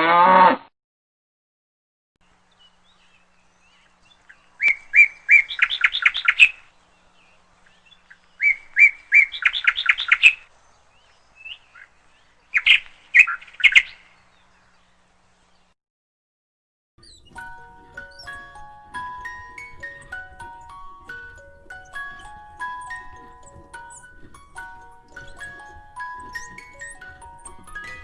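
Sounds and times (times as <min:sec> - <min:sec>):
songbird singing trills: 0:17.0 - 0:28.0.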